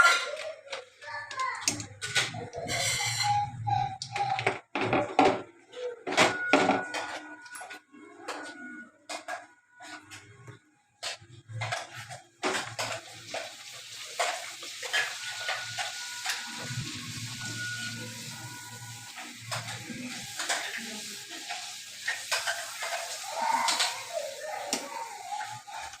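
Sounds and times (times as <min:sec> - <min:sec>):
papad sizzling in hot oil: 0:12.4 - 0:26.0.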